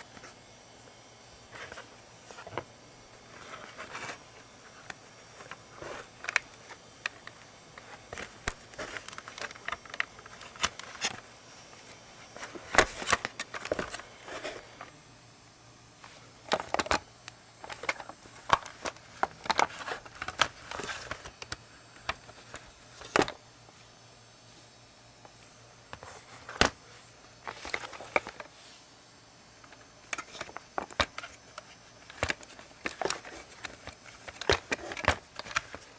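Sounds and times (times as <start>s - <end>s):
plastic parts clicking and clattering: 4.8s - 14.6s, 16.0s - 23.4s, 27.4s - 28.5s, 29.6s - 35.9s.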